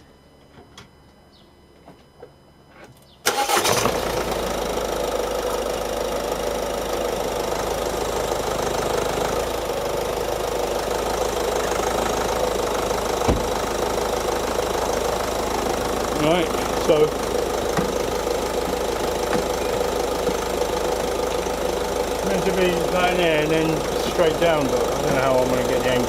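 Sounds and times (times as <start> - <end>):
diesel engine starting and idling: 3.2 - 26.0
thump: 13.2 - 13.5.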